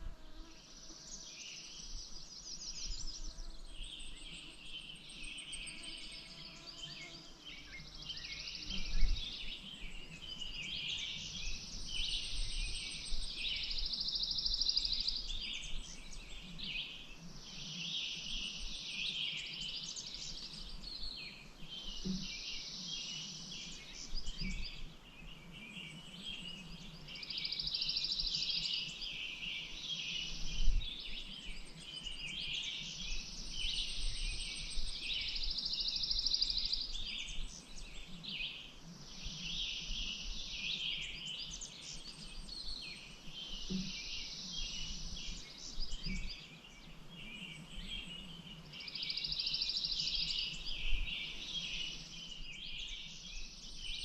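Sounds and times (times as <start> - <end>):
birds chirping and singing: 1.1 - 54.0.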